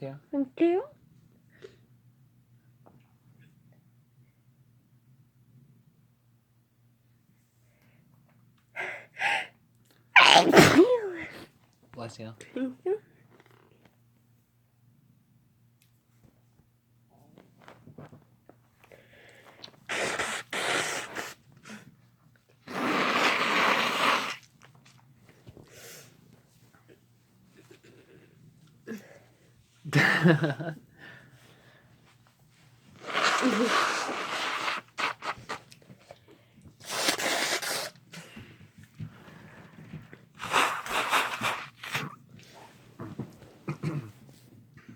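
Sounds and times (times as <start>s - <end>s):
person sneezing: 10.2s - 11.4s.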